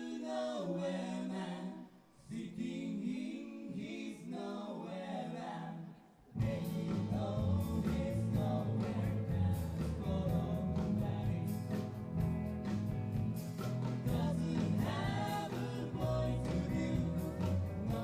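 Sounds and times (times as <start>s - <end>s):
vocal harmony singing: 0.0s - 12.6s, 13.7s - 18.0s
live band playing: 6.4s - 18.0s.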